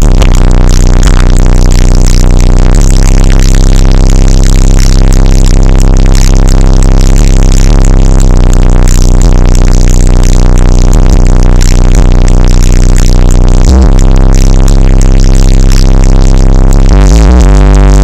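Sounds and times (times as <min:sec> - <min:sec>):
distorted bass-heavy electronic music: 0:00.0 - 0:18.0.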